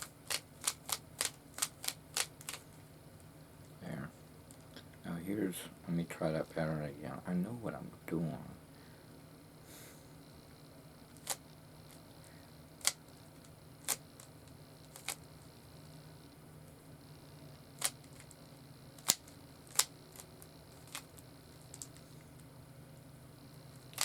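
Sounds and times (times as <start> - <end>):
plastic cube twisting clicks: 0.3 - 2.6, 19.0 - 22.0.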